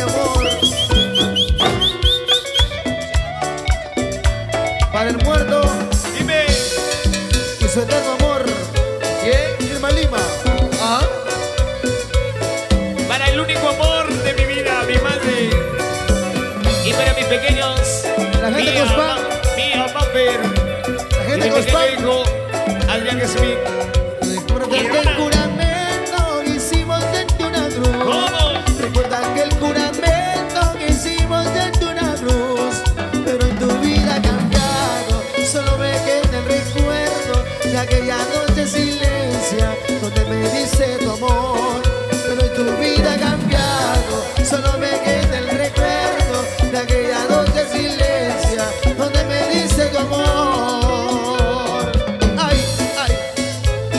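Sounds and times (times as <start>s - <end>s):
latin band music: 0.0s - 53.9s.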